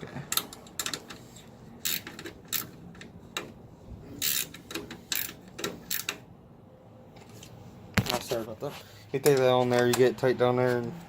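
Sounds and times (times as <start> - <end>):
ratchet wrench clicking: 1.8 - 2.8, 4.2 - 6.2.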